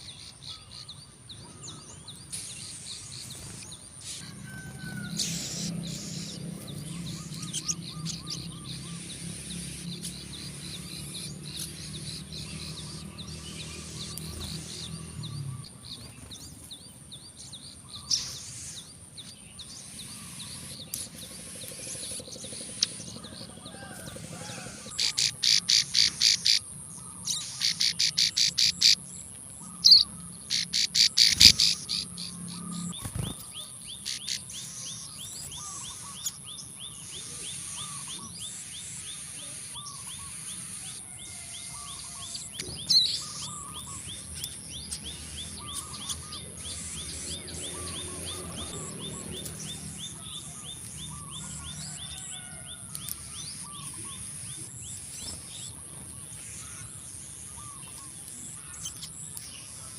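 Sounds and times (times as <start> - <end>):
steady high-pitched hiss: 2.2 - 4.3
bird bursts of rapid sharp notes: 29.8 - 36.4.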